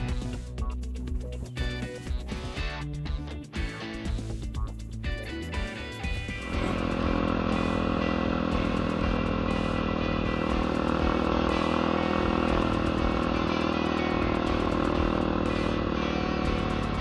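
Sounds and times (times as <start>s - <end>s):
dirt bike engine running: 3.6s - 17.0s.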